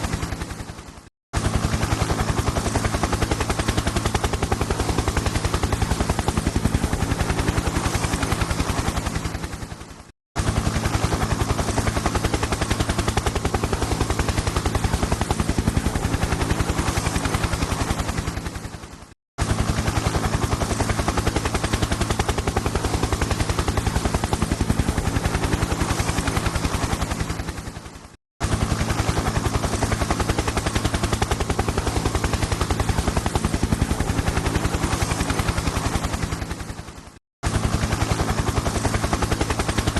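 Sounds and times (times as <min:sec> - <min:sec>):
helicopter rotor chop: 0:00.0 - 0:39.9.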